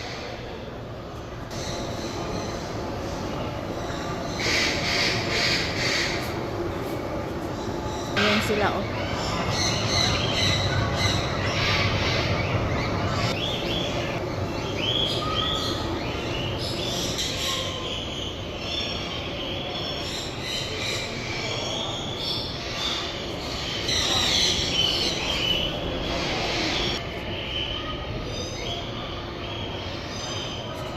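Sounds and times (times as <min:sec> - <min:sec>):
birds chirping and squealing: 0:01.5 - 0:30.9.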